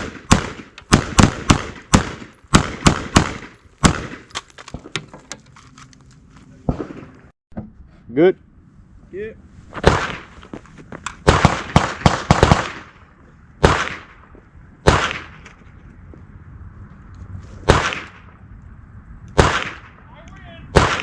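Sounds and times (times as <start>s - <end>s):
rifle shots echoing: 0.0s - 4.9s, 6.7s - 7.3s, 9.8s - 10.3s, 11.2s - 15.6s, 17.6s - 18.4s, 19.4s - 20.1s, 20.7s - 21.0s.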